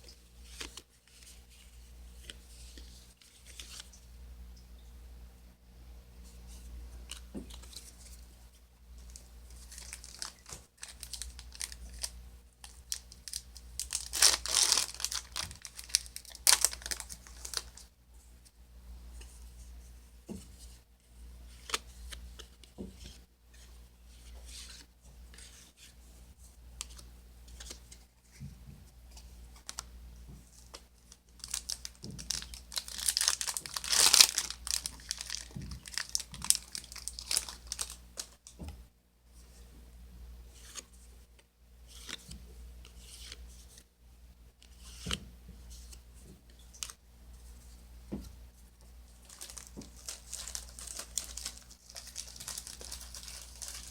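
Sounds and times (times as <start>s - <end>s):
foil wrapper crinkling and tearing: 9.1s - 17.9s, 31.2s - 38.4s, 49.2s - 53.9s.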